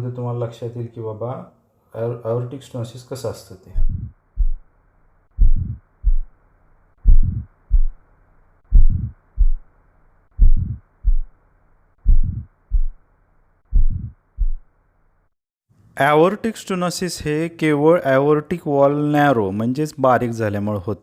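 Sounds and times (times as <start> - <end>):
heartbeat with murmur: 3.8 - 4.7, 5.3 - 6.4, 7.0 - 8.0, 8.7 - 9.7, 10.3 - 11.4, 12.0 - 13.0, 13.7 - 14.7.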